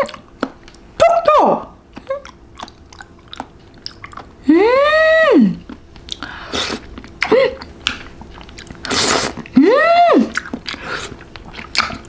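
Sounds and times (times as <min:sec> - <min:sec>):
candy chewing and crunching: 0:01.7 - 0:04.5, 0:05.5 - 0:12.0
person humming with enjoyment: 0:04.4 - 0:05.6, 0:09.6 - 0:10.4.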